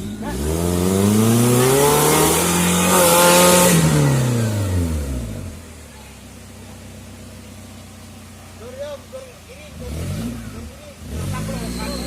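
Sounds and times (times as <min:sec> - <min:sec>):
engine revving under load: 0:00.0 - 0:05.8, 0:09.4 - 0:12.0
spinning tyres hissing: 0:00.0 - 0:12.0.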